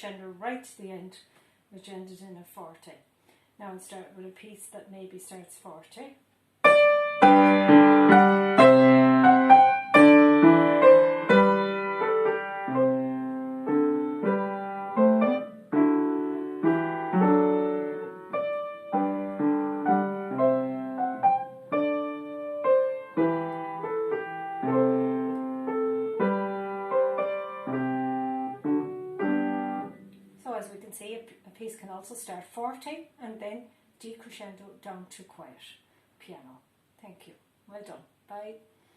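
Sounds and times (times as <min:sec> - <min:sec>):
piano piece: 0:06.6 - 0:30.5.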